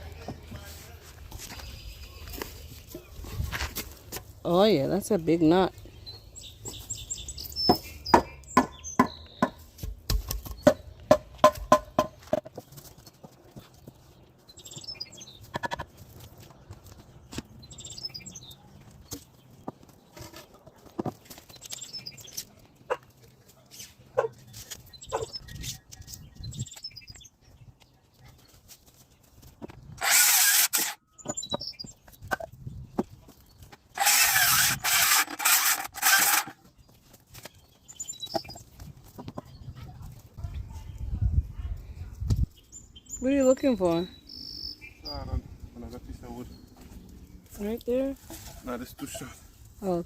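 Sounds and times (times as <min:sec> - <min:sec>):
rough scraping against wood: 0:29.6 - 0:31.4, 0:32.2 - 0:36.7.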